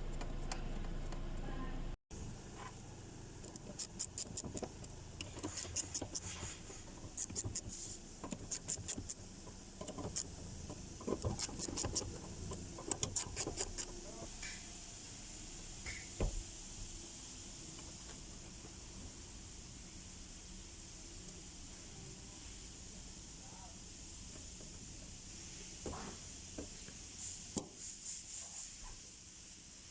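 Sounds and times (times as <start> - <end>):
hand tools clicking and knocking: 6.9 - 14.2.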